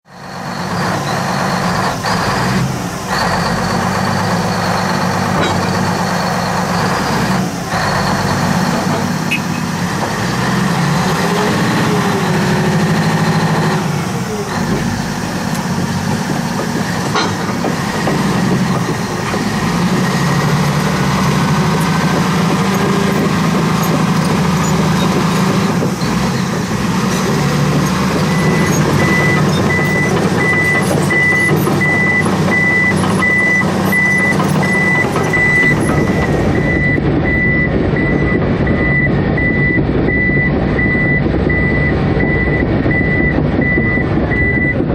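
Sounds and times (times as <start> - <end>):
bulldozer diesel engine running: 0.0 - 44.9
reversing alarm beeping: 27.1 - 44.9.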